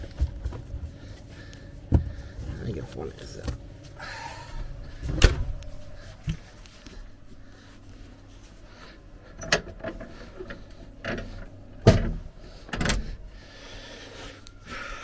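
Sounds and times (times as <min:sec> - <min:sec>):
faint low hum: 0:00.0 - 0:15.0
objects clunking and knocking: 0:01.9 - 0:02.6, 0:09.4 - 0:13.2.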